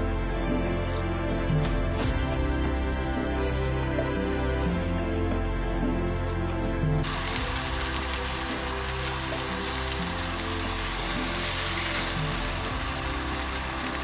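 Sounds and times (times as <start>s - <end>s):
soft background music: 0.0s - 14.0s
steady hiss: 7.0s - 14.0s.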